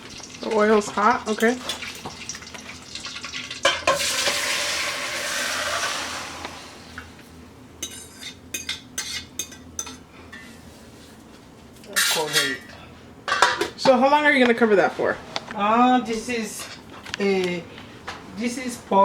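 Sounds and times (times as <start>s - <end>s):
meat sizzling in hot oil: 0.0s - 6.8s
metal clinking against pot: 7.8s - 10.0s.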